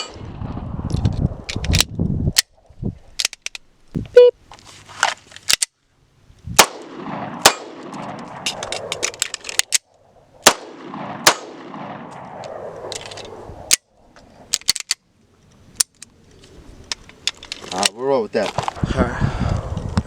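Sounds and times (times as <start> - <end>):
wind on microphone: 0.0 - 3.2, 3.9 - 4.2, 6.3 - 7.4, 10.2 - 13.8, 18.6 - 20.0
pistol shots: 6.6 - 9.0, 10.4 - 12.9
lighter sharp cracks: 6.6 - 15.0.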